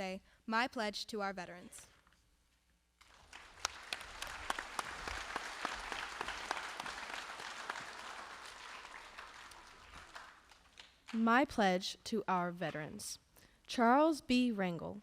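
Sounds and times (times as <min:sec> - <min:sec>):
audience applause: 0:03.0 - 0:10.9.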